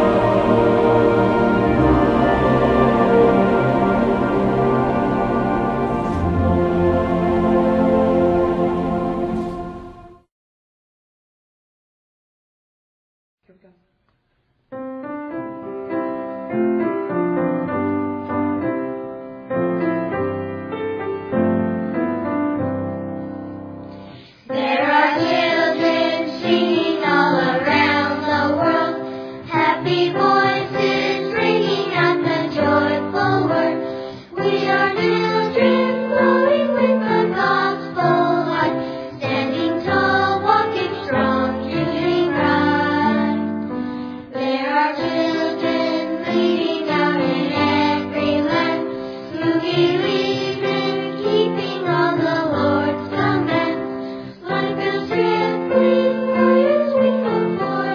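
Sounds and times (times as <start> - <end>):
choir singing with instruments: 0.0 - 10.3, 24.0 - 57.9.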